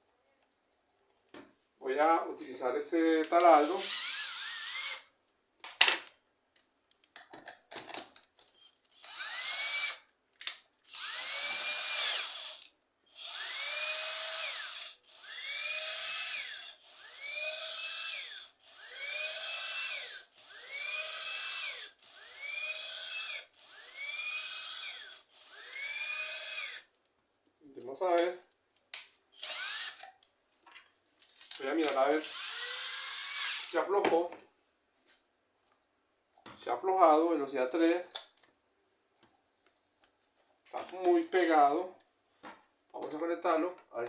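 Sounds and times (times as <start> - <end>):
electric drill bursts: 3.8 - 5.1, 9.0 - 10.0, 10.9 - 26.9, 29.4 - 30.0, 32.2 - 33.8.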